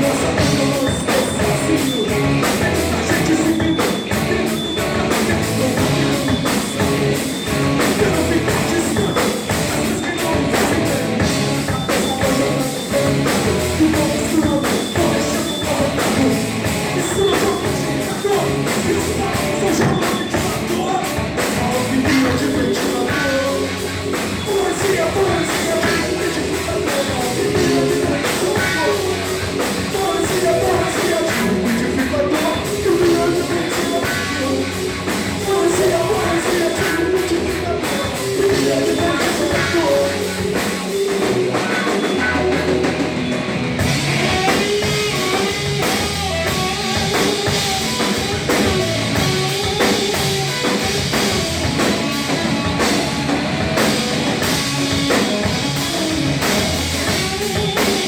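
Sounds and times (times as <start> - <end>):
person singing: 0.0 - 43.0
bass guitar: 0.0 - 58.0
drum kit: 0.0 - 58.0
electric guitar: 0.0 - 58.0.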